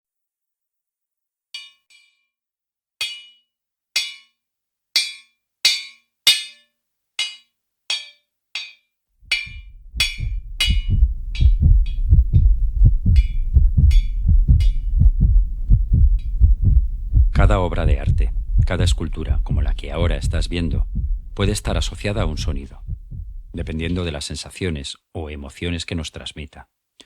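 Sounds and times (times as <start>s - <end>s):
loud low pulsing rumble: 9.2s - 24.0s.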